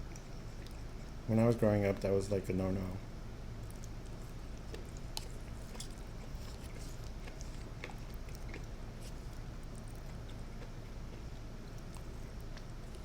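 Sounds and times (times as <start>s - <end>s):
close chewing: 0.0s - 1.1s, 3.6s - 13.0s
steady low hum: 0.0s - 13.0s.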